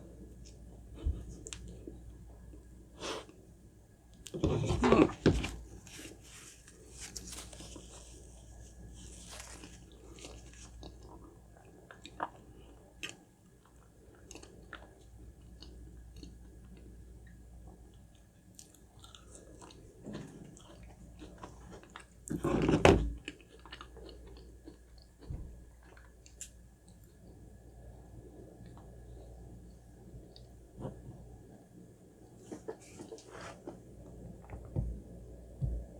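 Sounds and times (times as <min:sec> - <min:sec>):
chewing and biting food: 0:09.2 - 0:16.9, 0:17.9 - 0:27.3.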